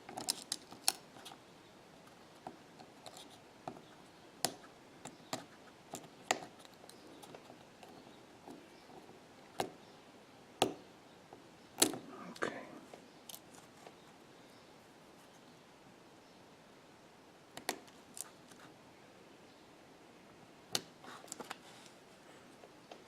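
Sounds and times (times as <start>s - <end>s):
small sharp clicks and taps: 17.6s - 18.6s.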